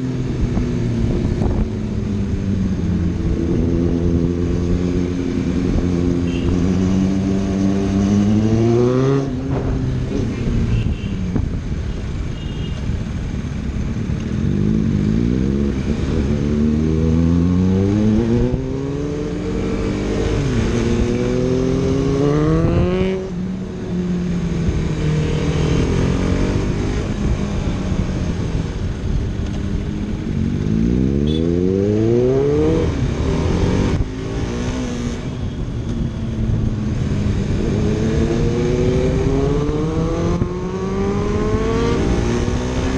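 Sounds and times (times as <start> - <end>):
motorcycle engine revving hard: 36.9 - 42.9.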